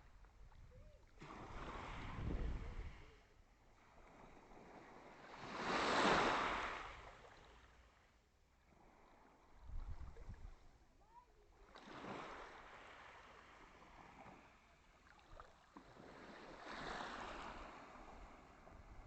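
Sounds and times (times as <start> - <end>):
waves washing onto shore: 4.2 - 7.6, 11.7 - 19.0.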